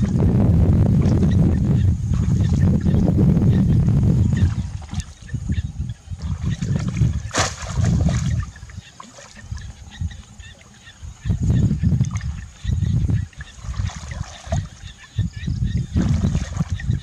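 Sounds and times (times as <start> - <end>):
low rumbling: 0.0 - 8.8
water splashing and trickling: 4.3 - 17.0
sharp splash: 6.3 - 9.4.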